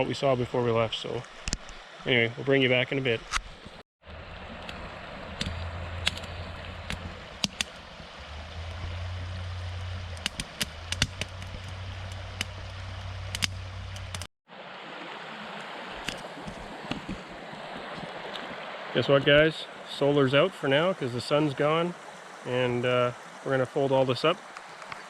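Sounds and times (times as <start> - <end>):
river rushing: 4.1 - 25.0
campfire crackling and popping: 4.4 - 14.3.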